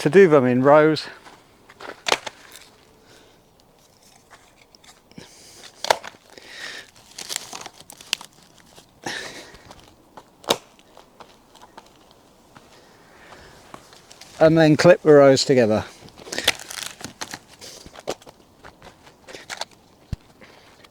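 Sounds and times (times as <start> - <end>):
scraping crunching rustles: 0.0 - 20.9.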